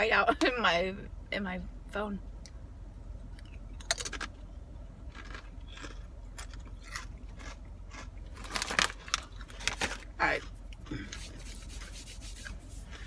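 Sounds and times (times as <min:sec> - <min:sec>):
biting and chewing food: 0:03.2 - 0:11.3
wrapper crinkling: 0:08.4 - 0:10.0.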